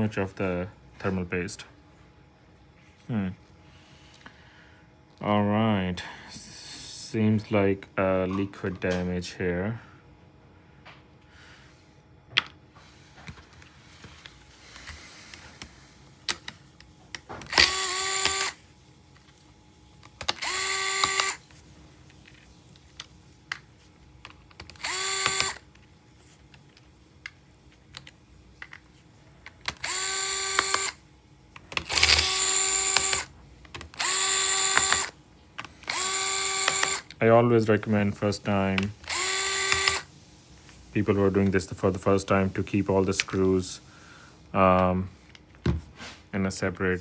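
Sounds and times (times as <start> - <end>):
electric screwdriver whining: 17.2 - 18.7, 20.0 - 22.3, 24.2 - 25.9, 29.5 - 37.2, 37.8 - 43.8.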